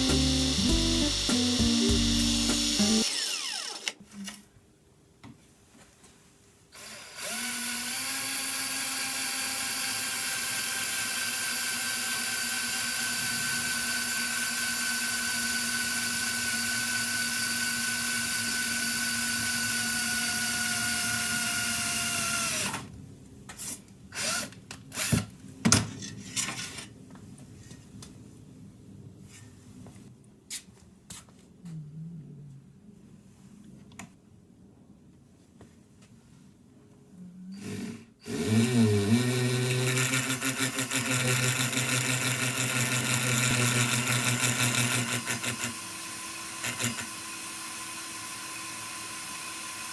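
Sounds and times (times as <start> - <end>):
electric power tool running: 0.0 - 4.0, 6.8 - 22.8, 37.6 - 49.9.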